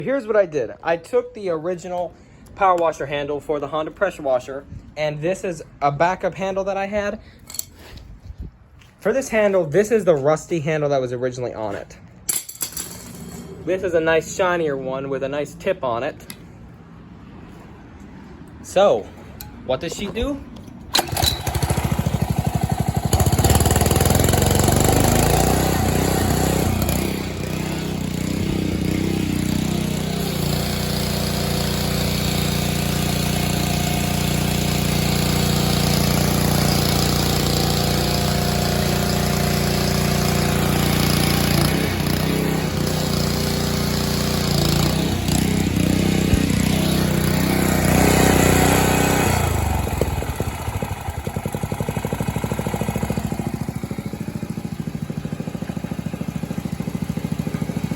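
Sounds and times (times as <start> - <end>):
pressure washer engine running: 12.7 - 14.4, 20.9 - 57.9.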